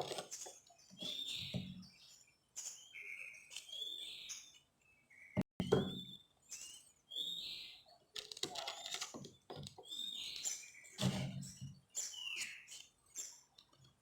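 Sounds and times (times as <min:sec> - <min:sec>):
handling knocks and rustling: 0:00.0 - 0:01.8.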